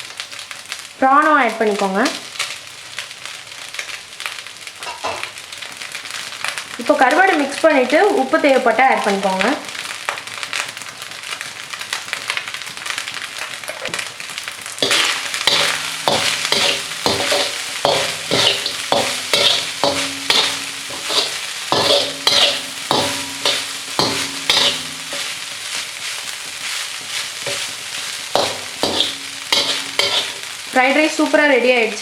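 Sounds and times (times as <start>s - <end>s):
light sizzle: 0.0s - 32.0s
spatula scraping a pan: 14.8s - 30.6s.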